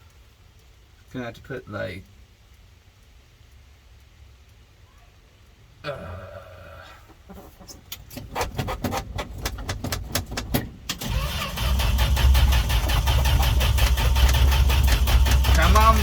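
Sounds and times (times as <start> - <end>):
engine cranking by starter: 8.0 - 16.0.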